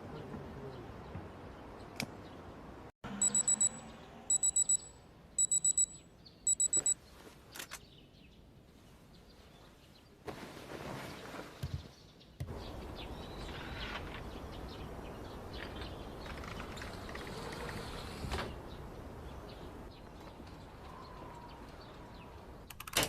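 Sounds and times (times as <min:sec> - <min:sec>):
alarm clock beeping: 0:03.2 - 0:07.0.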